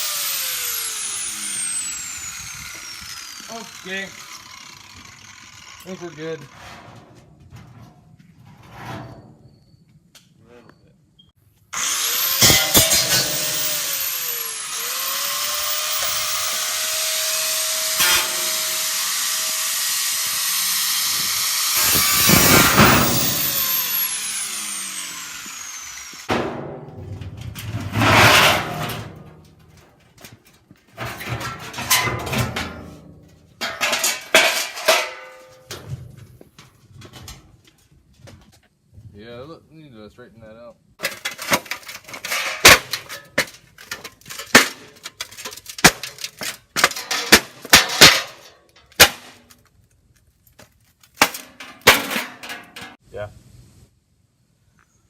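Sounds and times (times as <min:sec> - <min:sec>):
angle grinder cutting metal: 0:00.0 - 0:06.6, 0:11.8 - 0:26.3.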